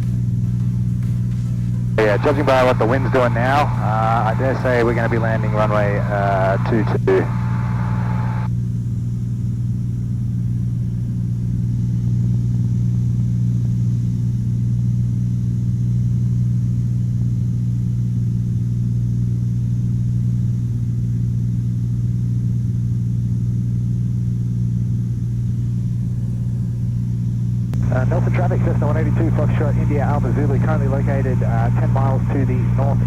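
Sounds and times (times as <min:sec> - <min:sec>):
plane engine and propeller droning: 0:00.0 - 0:33.0.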